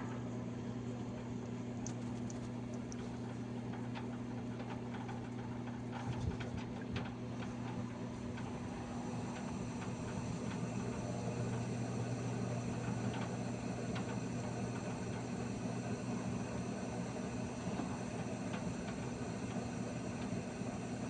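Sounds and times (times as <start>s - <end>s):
heater whining: 0.0s - 21.0s.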